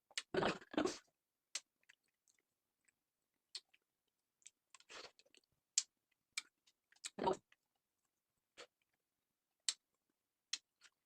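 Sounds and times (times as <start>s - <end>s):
mouth clicks and smacks: 0.1s - 3.8s, 4.4s - 7.6s, 9.6s - 9.9s, 10.5s - 11.0s.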